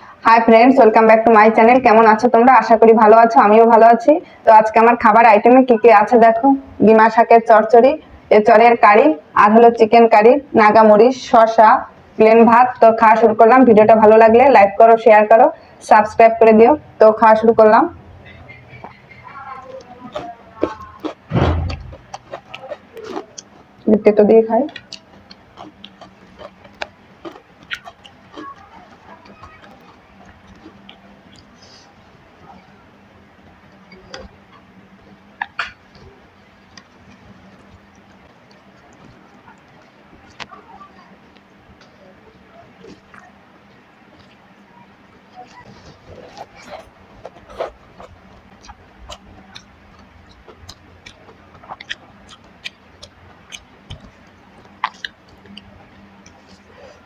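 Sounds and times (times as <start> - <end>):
person eating by hand: 18.2 - 24.0, 24.7 - 57.0
wet chewing: 18.3 - 57.0
lip-smacking clicks: 24.7 - 31.6.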